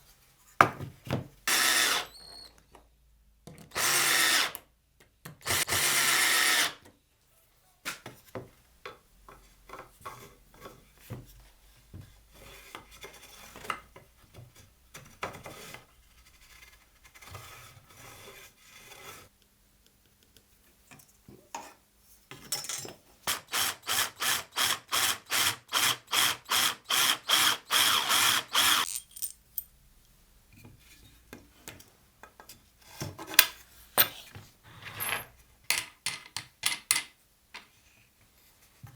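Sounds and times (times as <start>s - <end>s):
wood and tools knocking: 0.6s - 1.3s
power drill running: 1.5s - 2.2s, 3.8s - 4.5s, 5.5s - 6.8s, 23.5s - 29.0s.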